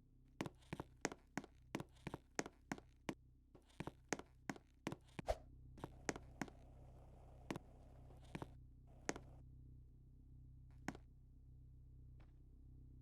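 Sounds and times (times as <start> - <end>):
steady low hum: 3.6 - 13.0.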